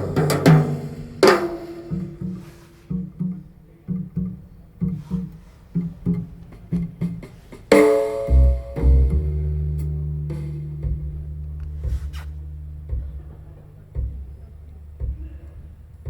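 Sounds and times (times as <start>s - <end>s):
plucked bass notes: 7.8s - 16.0s
deep held bass note: 8.3s - 15.8s.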